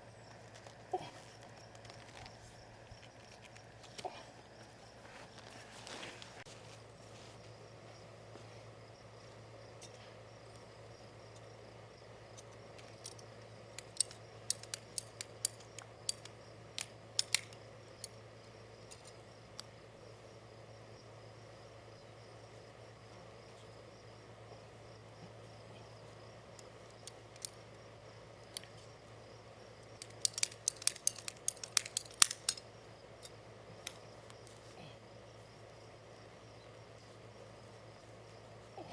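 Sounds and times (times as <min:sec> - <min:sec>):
high insect chirring: 0:08.8 - 0:38.9.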